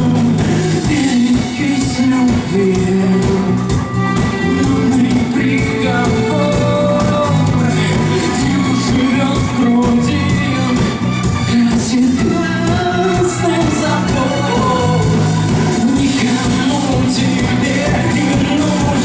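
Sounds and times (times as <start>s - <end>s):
heavy bass: 0.0s - 19.0s
live rock band playing: 0.0s - 19.0s
person singing: 0.0s - 19.0s.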